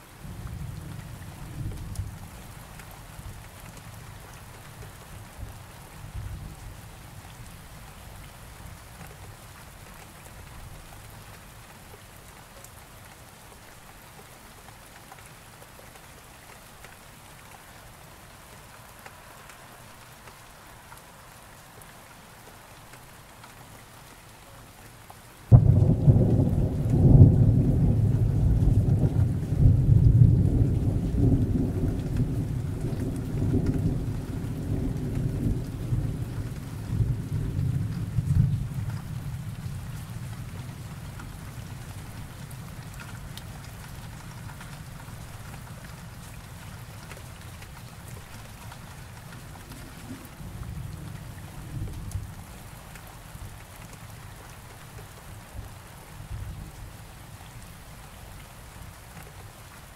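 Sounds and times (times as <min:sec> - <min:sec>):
steady rain: 0:00.0 - 0:59.9
loud thunderclap: 0:25.5 - 0:36.3
thunder rumbling: 0:25.5 - 0:42.4.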